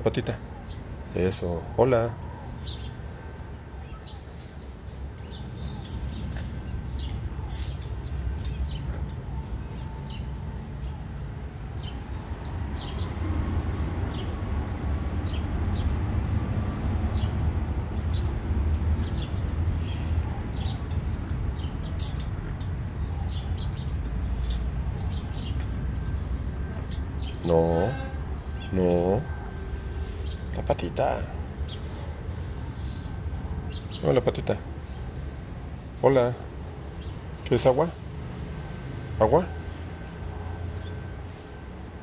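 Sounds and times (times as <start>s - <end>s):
high bird chirps: 0.4s - 30.6s.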